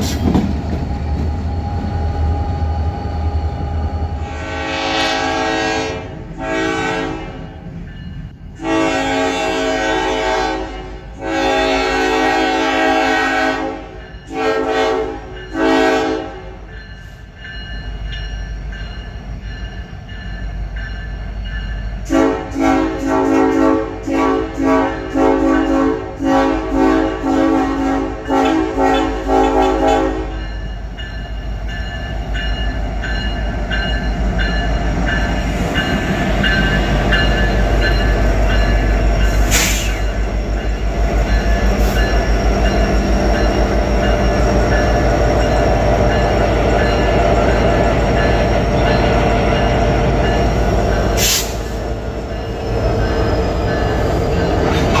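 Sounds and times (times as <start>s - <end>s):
moving train rumble: 0.0s - 55.0s
locomotive air horn: 4.2s - 7.4s, 8.6s - 16.6s, 22.1s - 30.4s, 51.1s - 51.8s.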